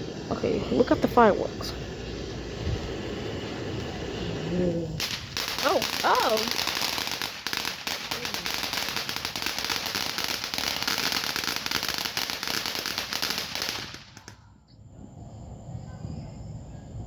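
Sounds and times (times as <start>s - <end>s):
firework crackling pops: 0.0s - 14.5s
firework hiss: 0.0s - 17.0s.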